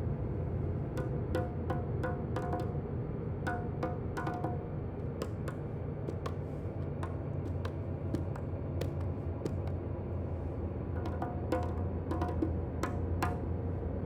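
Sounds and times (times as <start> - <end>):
steady low hum: 0.0 - 14.0
light hand percussion taps: 1.0 - 2.8, 3.4 - 9.9, 11.0 - 13.4.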